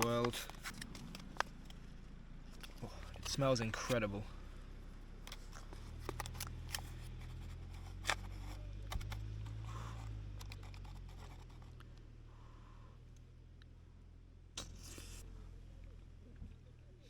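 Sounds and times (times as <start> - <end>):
spoon scraping in a pouch: 5.3 - 11.8, 14.6 - 15.3.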